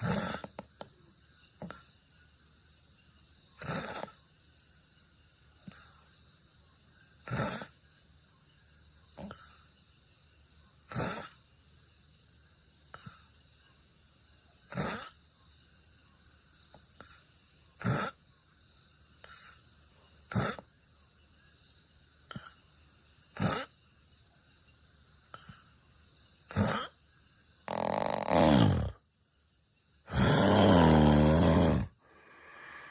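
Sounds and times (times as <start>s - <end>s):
person snoring softly: 27.7s - 29.0s, 30.1s - 32.9s.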